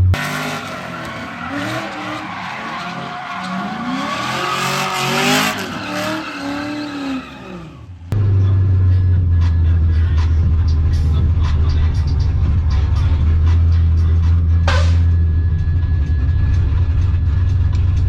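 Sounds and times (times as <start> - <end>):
car engine revving: 0.0 - 18.0
tires squealing on pavement: 0.1 - 8.1, 10.9 - 15.2.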